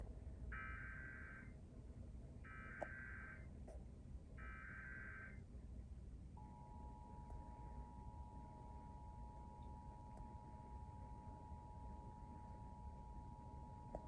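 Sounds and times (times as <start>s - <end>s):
steady attention tone: 6.4s - 14.0s.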